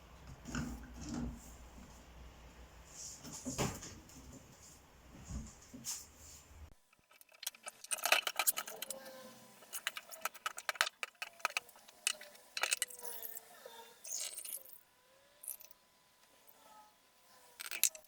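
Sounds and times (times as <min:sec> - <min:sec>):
hard objects clicking and clinking: 0:07.0 - 0:09.0, 0:09.6 - 0:13.4, 0:17.6 - 0:18.0.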